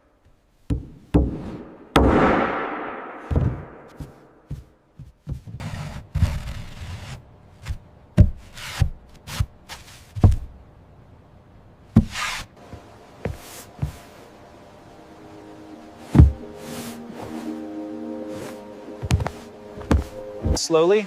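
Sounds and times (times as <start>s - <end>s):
knocks and thuds on wood: 0.7s - 2.6s, 3.2s - 5.6s, 7.6s - 9.5s, 10.1s - 10.6s, 11.9s - 12.4s, 16.1s - 16.4s, 19.0s - 20.6s.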